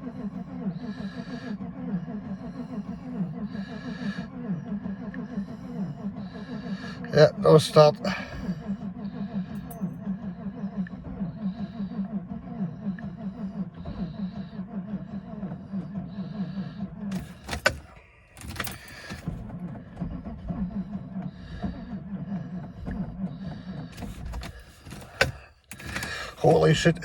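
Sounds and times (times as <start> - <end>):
engine cranking by starter motor: 0.0 - 27.0
starter click: 17.1 - 20.5, 24.0 - 27.0.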